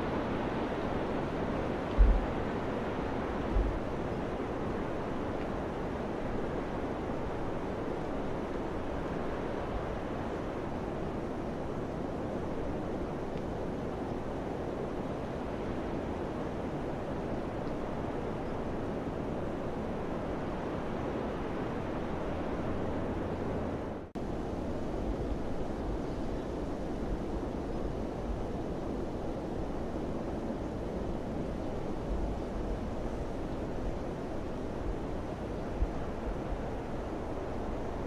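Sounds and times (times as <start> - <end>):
wind blowing: 0.0 - 4.3.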